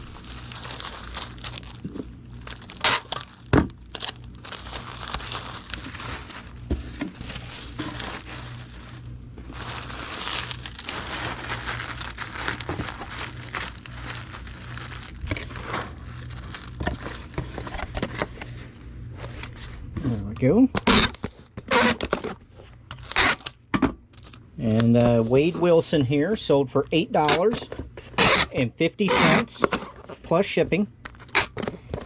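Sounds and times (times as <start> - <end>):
bubble wrap snapping: 0.0 - 17.4, 31.0 - 31.8
bubble wrap crinkling: 0.0 - 19.7, 20.8 - 25.8, 31.0 - 32.0.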